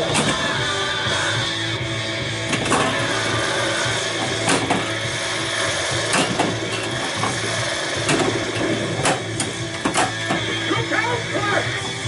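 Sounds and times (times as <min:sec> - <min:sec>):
electronic hum from speaker: 0:00.0 - 0:12.0
pinball flippers clacking: 0:02.5 - 0:03.2, 0:04.2 - 0:05.0, 0:06.0 - 0:10.6.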